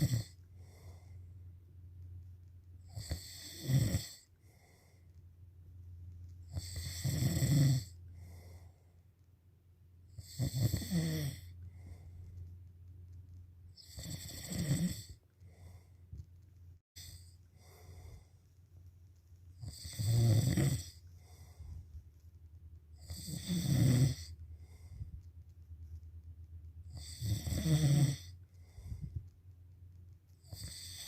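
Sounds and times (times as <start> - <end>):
loud rattling snores: 0.0 - 0.4, 2.9 - 4.3, 6.5 - 8.0, 10.2 - 11.5, 13.8 - 15.2, 17.0 - 17.3, 19.6 - 21.4, 23.0 - 24.8, 26.9 - 28.4, 30.4 - 31.0
soft breathing: 0.3 - 1.5, 4.2 - 5.3, 8.1 - 9.2, 11.6 - 12.6, 15.1 - 16.4, 17.0 - 18.8, 20.9 - 22.3, 24.3 - 26.0, 28.3 - 29.4.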